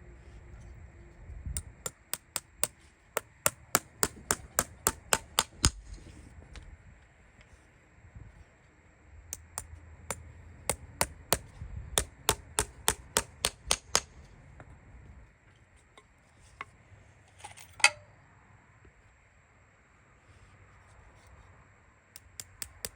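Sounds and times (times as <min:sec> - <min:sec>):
hammer tapping: 0:01.6 - 0:05.9, 0:09.4 - 0:09.7, 0:10.7 - 0:14.1, 0:22.2 - 0:22.9.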